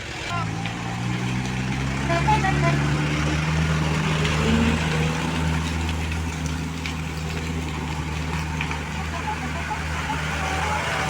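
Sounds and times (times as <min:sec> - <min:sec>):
heavy truck engine running: 0:00.0 - 0:11.0.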